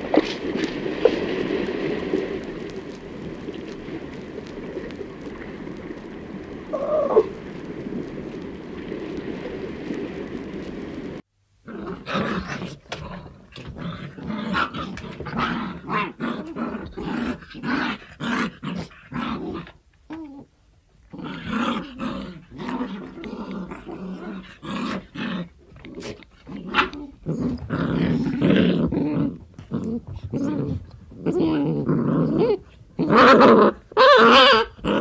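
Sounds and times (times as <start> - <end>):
dog growling: 6.7 - 7.3, 21.1 - 35.0.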